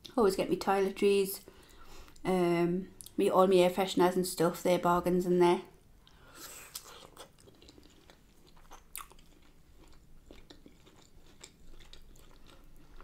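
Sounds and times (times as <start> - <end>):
chewing and wet mouth clicks: 6.0 - 13.0.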